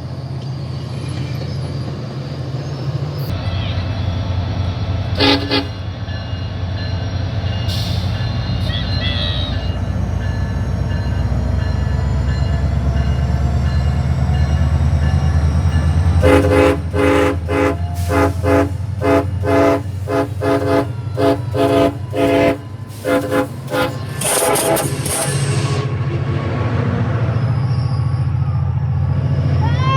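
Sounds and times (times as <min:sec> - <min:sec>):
train rumble: 0:00.0 - 0:29.9
train horn short blasts: 0:05.2 - 0:05.8, 0:16.2 - 0:25.4.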